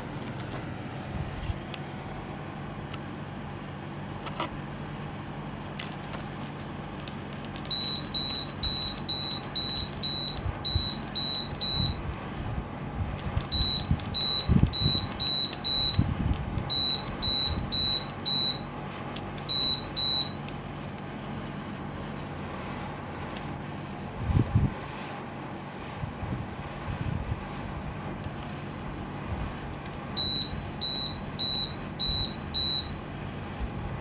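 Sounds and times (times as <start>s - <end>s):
air conditioner running: 0.0s - 34.0s
air conditioner short high beeps: 7.6s - 12.1s, 13.4s - 18.8s, 19.4s - 20.5s, 30.0s - 33.1s.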